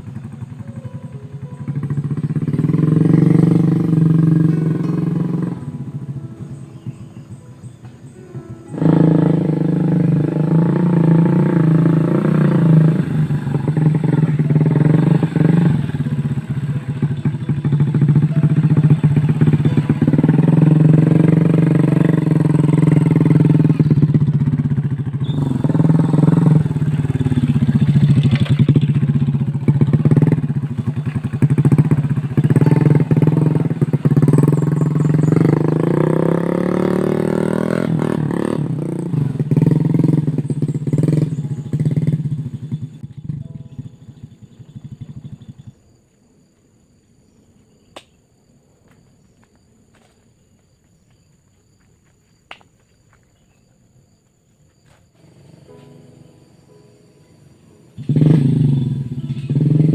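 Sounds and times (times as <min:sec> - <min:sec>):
small motorcycle engine running: 0:00.0 - 0:07.8, 0:08.7 - 0:45.9, 0:58.0 - 0:59.9.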